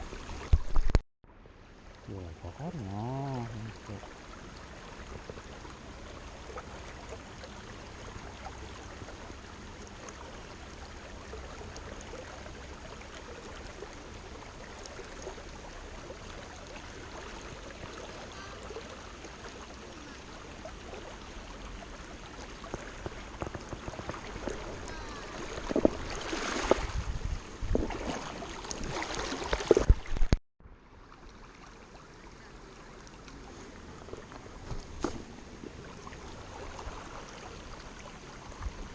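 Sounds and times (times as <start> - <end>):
river water flowing: 0.0 - 38.9
knocks and rustles close by: 22.7 - 24.7.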